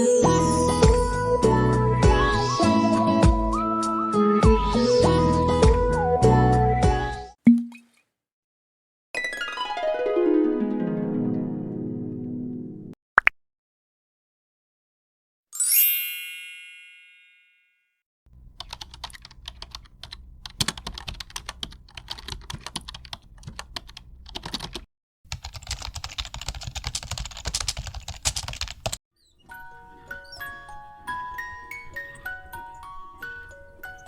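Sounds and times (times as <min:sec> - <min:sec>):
keyboard typing clicks: 0:18.4 - 0:29.0.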